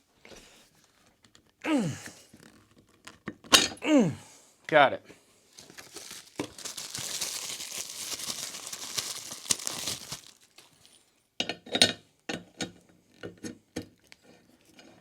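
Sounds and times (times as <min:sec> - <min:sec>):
crinkling rustling handling: 0:05.5 - 0:11.1.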